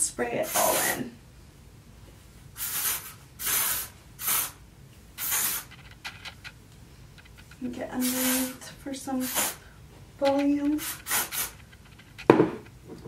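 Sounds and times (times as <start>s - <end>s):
aerosol spray hissing: 0.4s - 1.0s, 2.6s - 4.6s, 5.2s - 5.8s, 8.0s - 9.6s, 10.7s - 11.6s.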